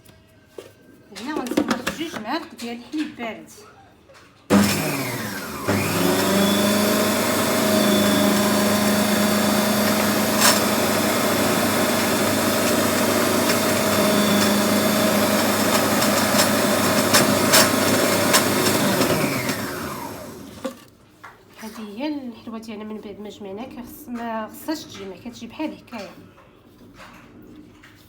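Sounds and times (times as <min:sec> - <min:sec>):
electric mixer motor running: 0:04.5 - 0:20.9.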